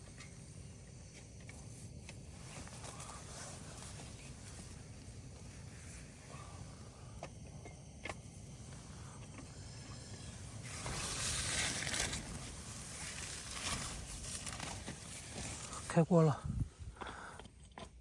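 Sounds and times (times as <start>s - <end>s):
pot boiling hiss: 0.0s - 18.0s.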